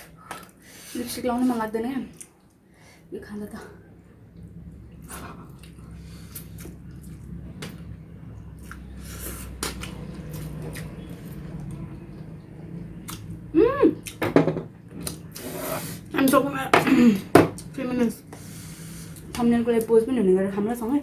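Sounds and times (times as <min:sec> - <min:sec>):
low steady hum: 0:00.0 - 0:21.0
loud knocks: 0:14.2 - 0:14.8.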